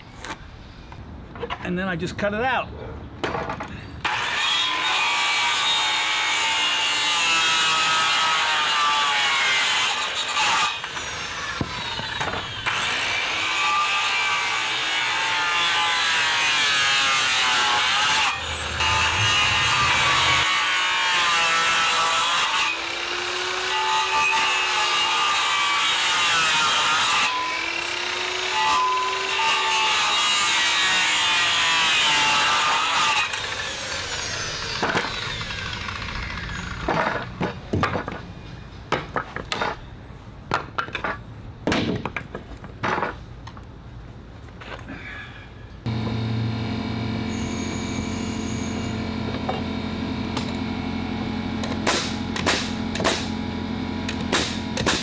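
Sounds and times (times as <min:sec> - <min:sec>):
power saw cutting wood: 0:04.0 - 0:37.2, 0:45.9 - 0:55.0.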